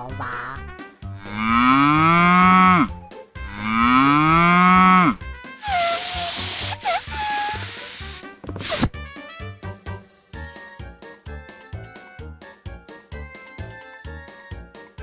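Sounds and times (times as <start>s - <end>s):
cow mooing: 1.2s - 5.2s
air hissing with faint whistle: 5.6s - 8.9s.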